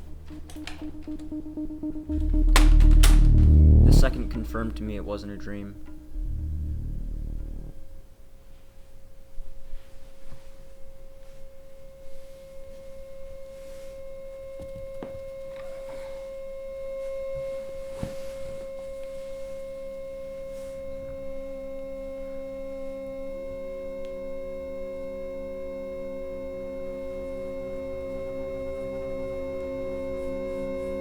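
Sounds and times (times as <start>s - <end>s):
electronic drone: 0.0s - 7.8s.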